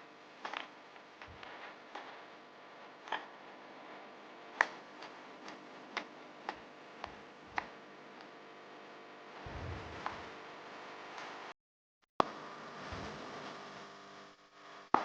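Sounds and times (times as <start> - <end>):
low rumble: 9.4 - 10.4.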